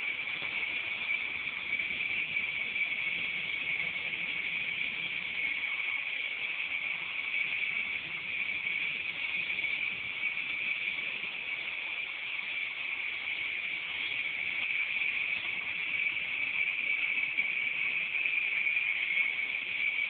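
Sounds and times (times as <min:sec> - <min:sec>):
toy helicopter rotor buzz: 0:00.0 - 0:20.0.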